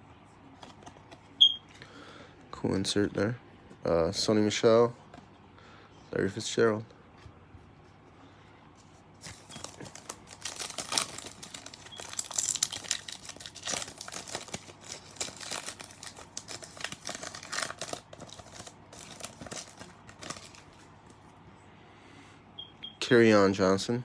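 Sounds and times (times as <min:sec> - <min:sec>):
wrapper tearing and crinkling: 0:09.2 - 0:20.9.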